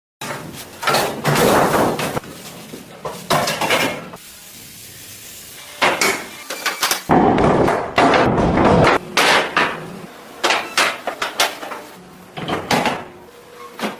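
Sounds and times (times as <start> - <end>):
metal clanks and knocks: 10.4 - 13.1.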